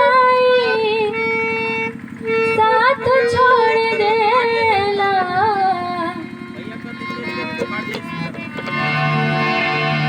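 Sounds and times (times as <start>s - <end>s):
woman singing: 0.0s - 1.4s, 2.2s - 6.3s.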